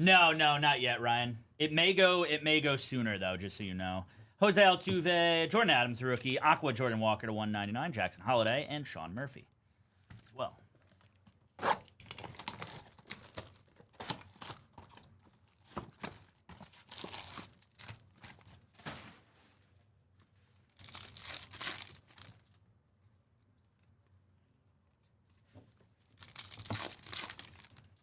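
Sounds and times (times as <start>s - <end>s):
foil wrappers tearing and crinkling: 11.9s - 15.1s, 16.0s - 18.7s, 20.6s - 22.6s, 26.1s - 28.0s.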